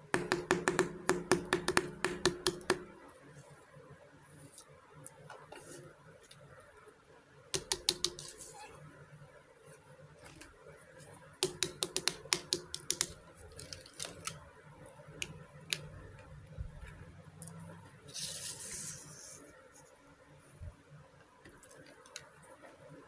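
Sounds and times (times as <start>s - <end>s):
toy pieces clicking and tapping: 7.6s - 8.3s, 11.4s - 14.4s.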